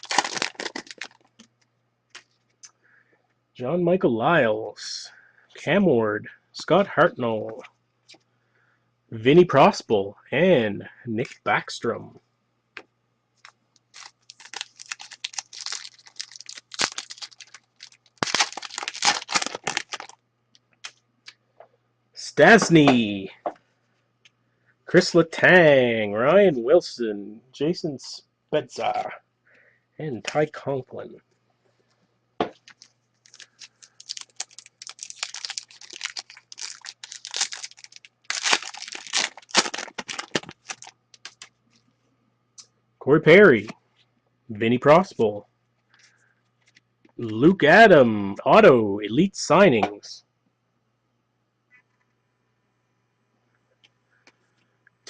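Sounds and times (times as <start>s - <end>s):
card pack wrapper crinkling: 0.0s - 1.5s, 13.8s - 20.2s, 32.6s - 41.5s
cards handled: 0.0s - 1.5s, 13.4s - 20.2s, 32.4s - 41.5s.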